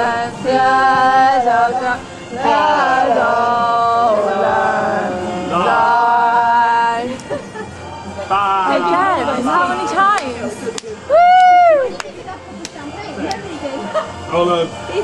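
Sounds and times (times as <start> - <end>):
voices singing slow melody: 0.0 - 11.8.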